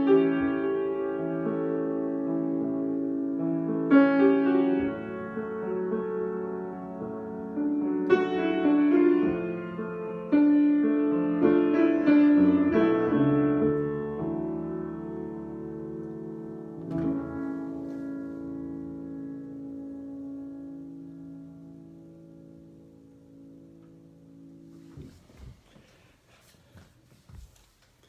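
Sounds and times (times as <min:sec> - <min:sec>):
solo piano: 0:00.0 - 0:25.8.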